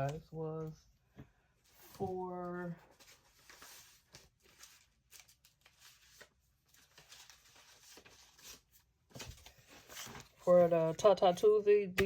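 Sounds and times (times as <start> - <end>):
paper rustling and light taps: 1.1 - 10.4.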